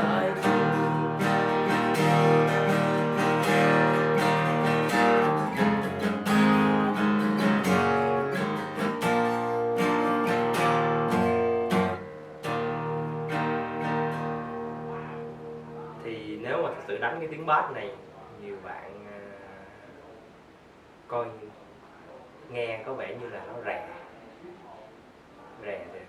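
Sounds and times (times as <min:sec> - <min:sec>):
acoustic guitar strummed chords: 0:00.0 - 0:16.4.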